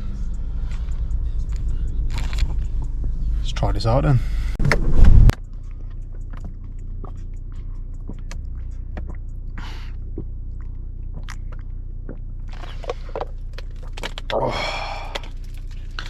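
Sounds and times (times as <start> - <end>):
steady low hum: 0.0 - 16.0
person chewing food: 1.0 - 2.9, 5.6 - 14.4.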